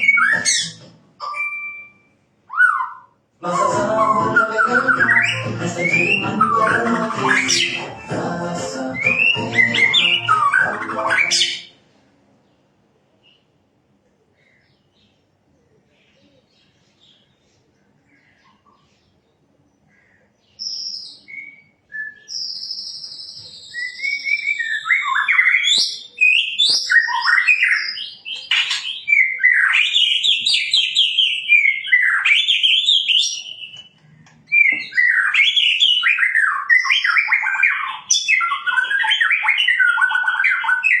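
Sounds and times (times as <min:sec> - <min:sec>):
bird singing whistles: 0:00.0 - 0:11.7, 0:20.6 - 0:41.0.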